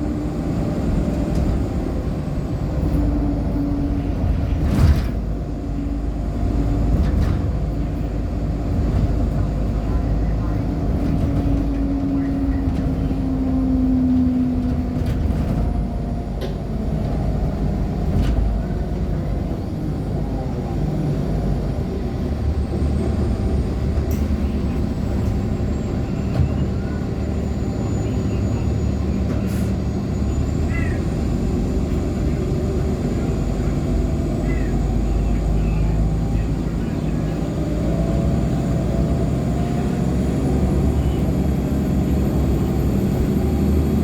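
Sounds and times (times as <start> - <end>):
bus engine and road rumble: 0.0 - 44.0.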